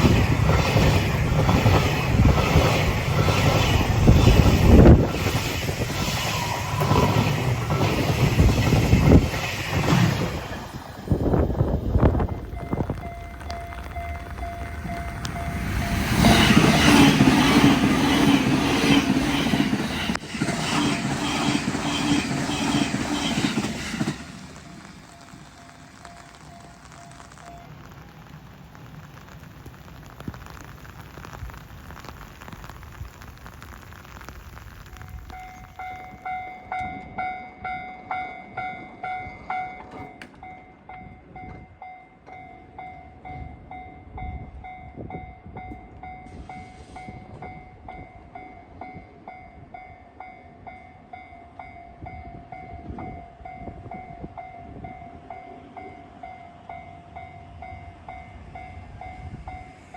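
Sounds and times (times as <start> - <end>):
level crossing warning bell: 11.1 - 16.7, 24.9 - 28.0, 35.3 - 59.9.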